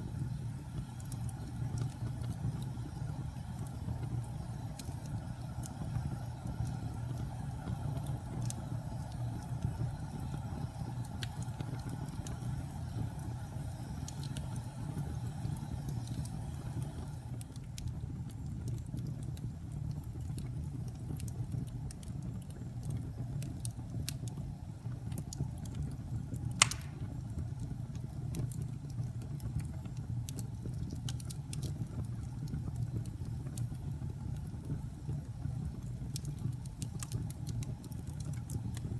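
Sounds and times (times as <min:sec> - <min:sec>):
fire burning and crackling: 0:00.0 - 0:38.9
sharp loud pop: 0:26.6 - 0:27.1
soft hiss: 0:26.6 - 0:27.3.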